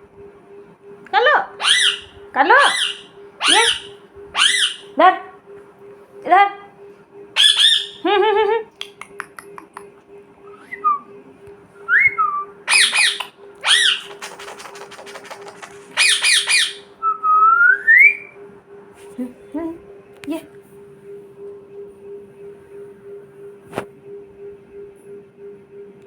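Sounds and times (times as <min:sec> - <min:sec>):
parrot squawking: 0:01.6 - 0:05.0, 0:07.4 - 0:08.0, 0:12.7 - 0:16.9
parrot whistling: 0:01.6 - 0:05.0, 0:07.4 - 0:08.0, 0:11.9 - 0:18.3
parrot rapid clicking: 0:13.0 - 0:16.8.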